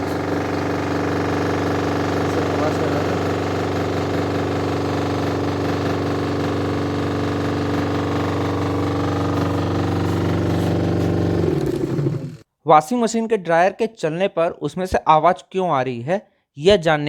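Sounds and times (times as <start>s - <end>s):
fast rattling buzz: 0.0s - 12.4s
spin dryer humming: 0.0s - 12.4s.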